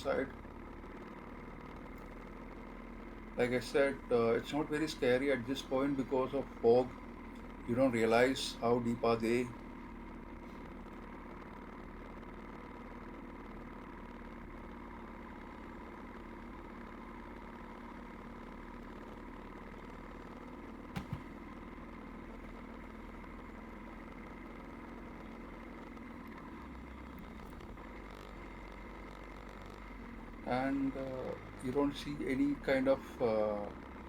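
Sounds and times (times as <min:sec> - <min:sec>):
vehicle engine droning: 0:00.0 - 0:34.0
quick knocks: 0:20.9 - 0:21.3.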